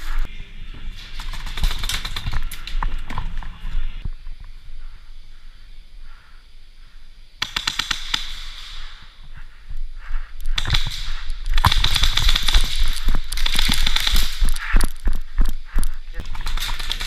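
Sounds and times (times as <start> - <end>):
airsoft guns firing: 1.1 - 3.3, 7.4 - 9.2, 10.5 - 14.7, 16.2 - 17.0.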